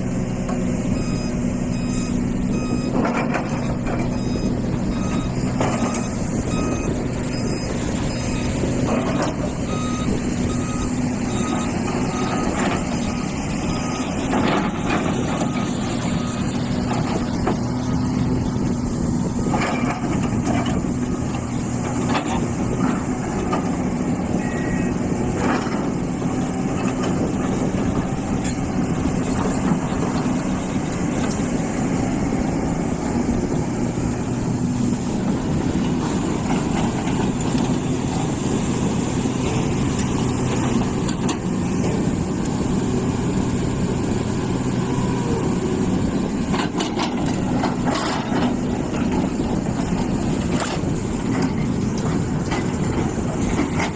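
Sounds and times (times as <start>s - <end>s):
excavator diesel engine: 0.0s - 53.9s.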